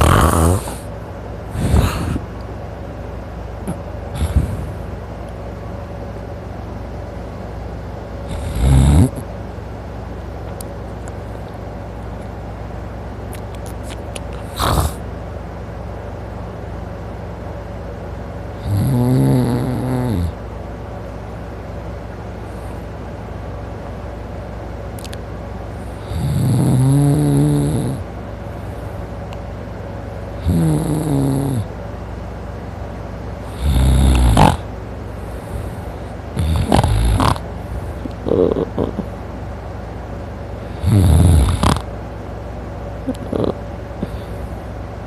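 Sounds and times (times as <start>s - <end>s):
man snoring loudly: 0.0s - 0.9s, 1.6s - 2.2s, 8.3s - 9.2s, 14.5s - 15.0s, 18.6s - 20.4s, 26.0s - 28.0s, 30.4s - 31.7s, 33.5s - 34.7s, 36.3s - 37.4s, 40.7s - 41.9s.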